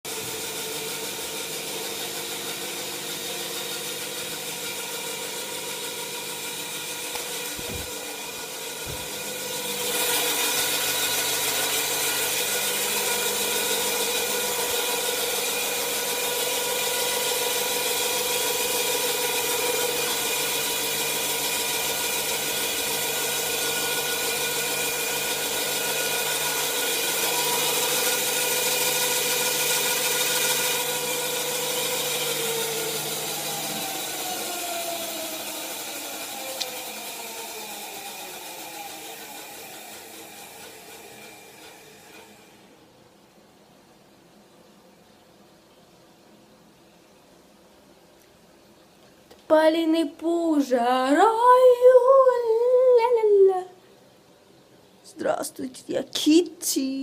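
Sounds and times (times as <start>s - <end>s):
washing machine humming: 0.0s - 44.4s.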